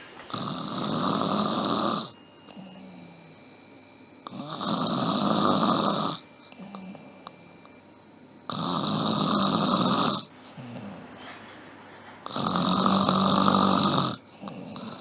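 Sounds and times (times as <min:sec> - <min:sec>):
person snoring: 0:00.3 - 0:03.4, 0:04.2 - 0:07.4, 0:08.5 - 0:11.1, 0:12.2 - 0:15.0
quiet breathing: 0:06.1 - 0:07.9, 0:10.2 - 0:12.4.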